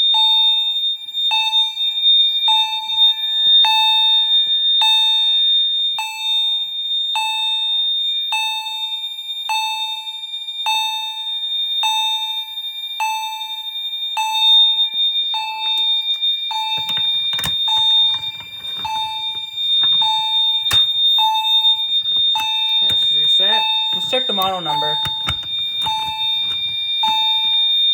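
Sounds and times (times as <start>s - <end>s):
rustling handling noise: 15.6s - 27.5s
sharp clicks: 15.7s - 27.2s.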